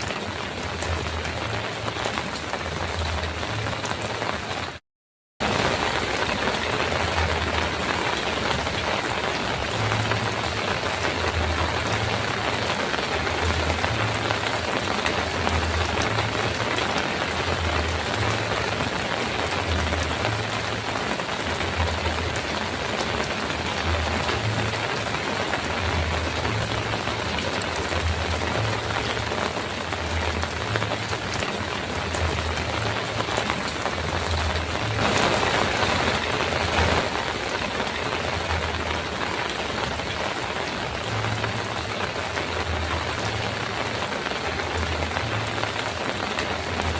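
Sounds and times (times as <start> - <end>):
heavy rain on a metal roof: 0.0 - 4.8, 5.4 - 46.9.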